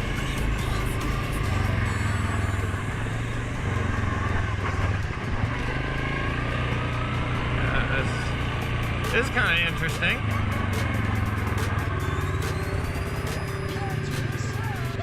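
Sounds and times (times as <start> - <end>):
atv engine running: 0.0 - 15.0.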